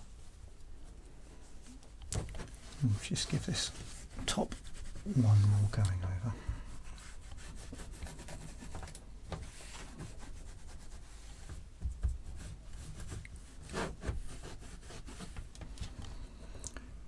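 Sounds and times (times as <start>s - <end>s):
cloth wiping plastic case: 2.6s - 11.0s.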